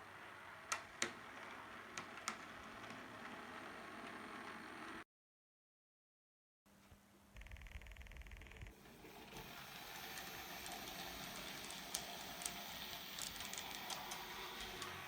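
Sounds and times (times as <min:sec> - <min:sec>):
model train rolling rumble: 0:00.0 - 0:05.0, 0:08.8 - 0:15.0.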